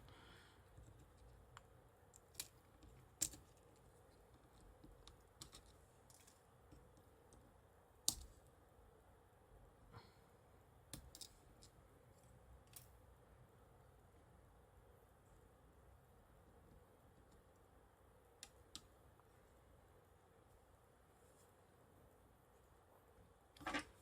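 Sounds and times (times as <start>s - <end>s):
small connectors clicking: 0.8s - 7.4s.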